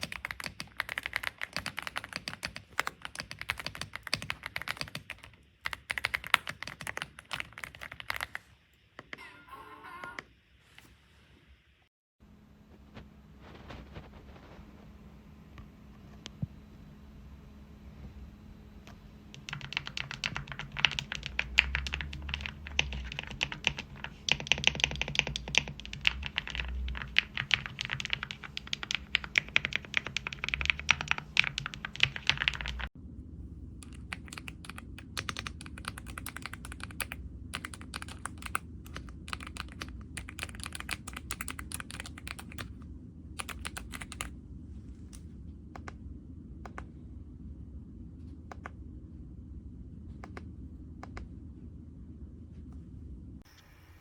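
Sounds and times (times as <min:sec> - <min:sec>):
mechanical keyboard typing: 0:00.0 - 0:08.4, 0:19.3 - 0:33.0, 0:33.8 - 0:42.7, 0:43.4 - 0:44.3.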